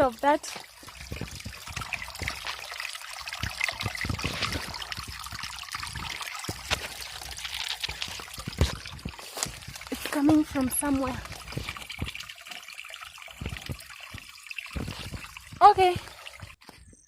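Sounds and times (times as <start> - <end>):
stream water splashing: 0.0 - 16.8
dull low thumps: 0.8 - 2.6, 3.3 - 12.3, 13.3 - 16.6.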